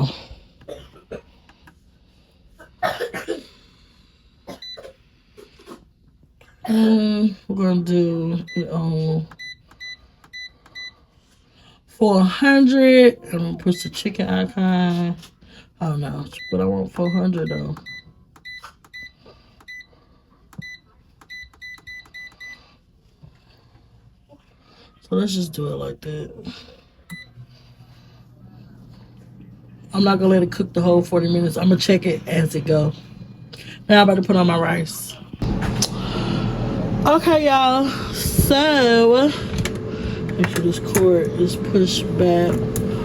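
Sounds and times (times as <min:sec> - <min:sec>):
air fryer electronic beep: 0:08.4 - 0:11.0, 0:16.2 - 0:20.0, 0:20.6 - 0:22.6, 0:27.1 - 0:27.4, 0:35.4 - 0:43.0
control panel beeps: 0:20.6 - 0:22.6.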